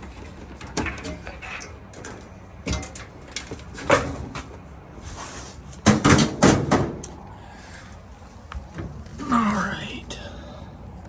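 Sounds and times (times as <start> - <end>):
dryer cabinet parts clattering: 0.0 - 4.6, 5.8 - 7.1.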